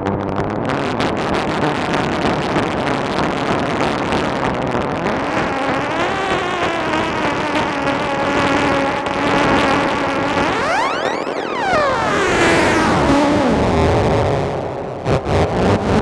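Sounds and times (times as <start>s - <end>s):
droning synthesizer with echo: 0.0s - 16.0s
rising and falling synth sweep: 5.4s - 16.0s
gliding synth tones: 8.5s - 16.0s.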